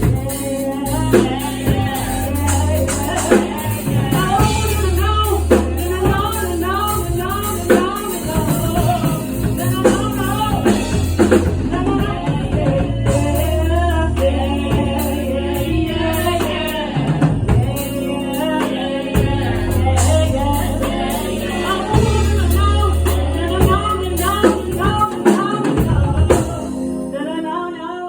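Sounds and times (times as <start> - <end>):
bass and drum beat: 0.0 - 26.8.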